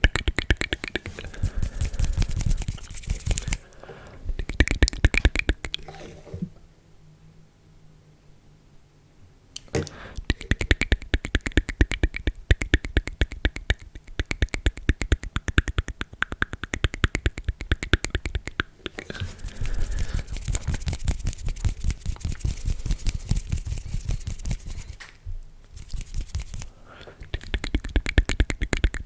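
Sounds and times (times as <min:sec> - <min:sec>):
wet mouth clicks and smacking: 0:00.0 - 0:03.7, 0:04.4 - 0:05.9, 0:09.6 - 0:25.1, 0:25.7 - 0:29.0.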